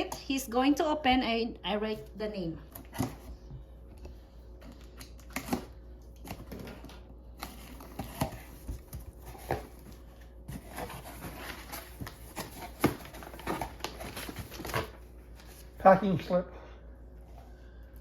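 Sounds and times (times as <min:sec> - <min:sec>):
packaging rustling: 0:04.6 - 0:15.8.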